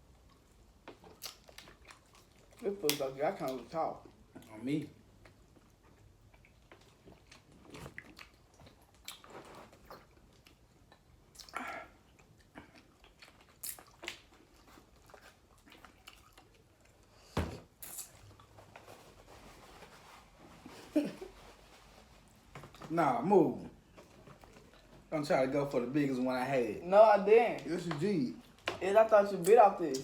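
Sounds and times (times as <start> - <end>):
chewing with crunches: 0.0 - 19.1, 23.8 - 25.1.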